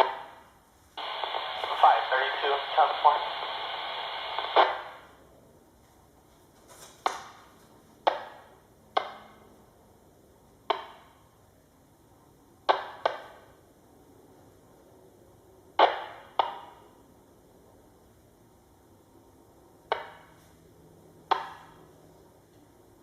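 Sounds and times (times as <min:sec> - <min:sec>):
sharp knocks in a small room: 0:07.0 - 0:09.5, 0:10.6 - 0:11.3, 0:12.6 - 0:13.6, 0:15.8 - 0:16.9, 0:19.9 - 0:20.4, 0:21.3 - 0:21.9.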